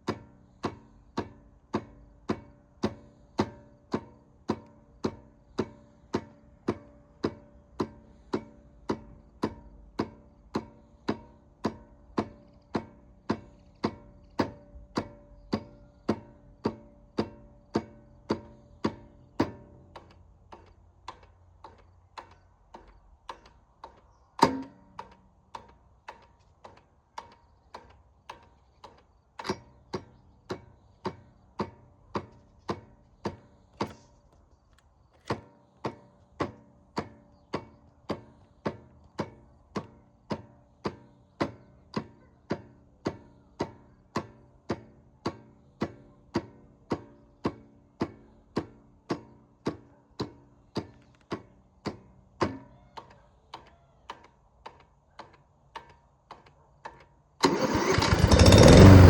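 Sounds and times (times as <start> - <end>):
starter solenoid clicking: 57.4 - 59.0.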